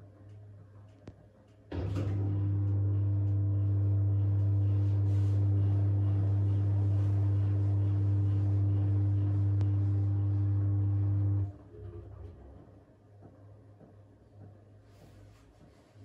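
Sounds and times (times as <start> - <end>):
washing machine drain pump humming: 1.7 - 12.2.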